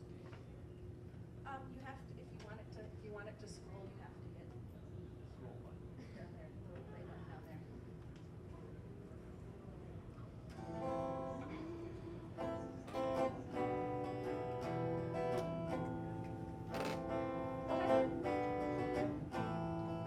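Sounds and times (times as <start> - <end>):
acoustic guitar strumming: 12.4 - 20.0.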